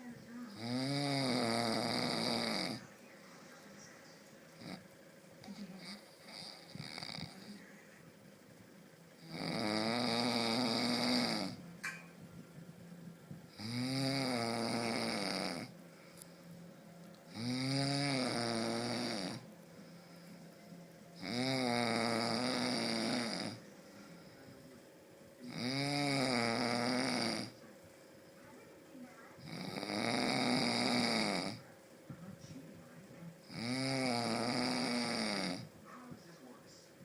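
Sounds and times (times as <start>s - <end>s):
quiet breaths: 0.0s - 37.0s
person snoring: 0.5s - 2.8s, 5.8s - 7.4s, 9.2s - 11.6s, 13.5s - 15.8s, 17.3s - 20.3s, 21.2s - 24.4s, 25.4s - 27.6s, 29.4s - 31.6s, 33.4s - 35.7s.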